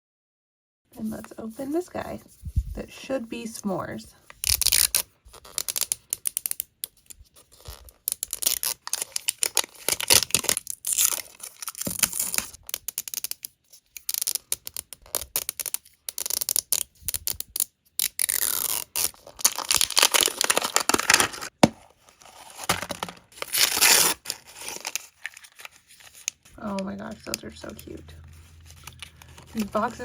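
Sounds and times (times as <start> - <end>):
plastic packaging crinkling: 7.6 - 13.3, 14.0 - 30.0.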